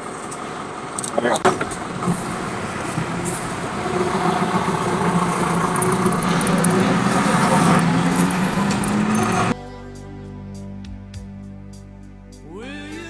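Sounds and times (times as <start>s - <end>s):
road noise: 0.0s - 9.6s
truck engine hum: 0.0s - 9.6s.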